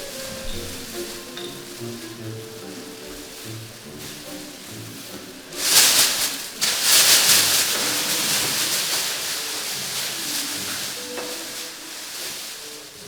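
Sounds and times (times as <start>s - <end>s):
loud hissing rush: 0.0s - 13.0s.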